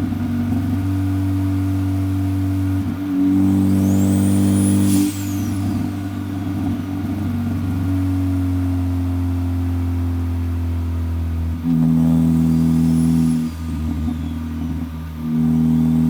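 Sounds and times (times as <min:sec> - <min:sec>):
car engine droning: 0:00.0 - 0:16.0
turbo whistle: 0:03.1 - 0:08.0, 0:11.7 - 0:16.0.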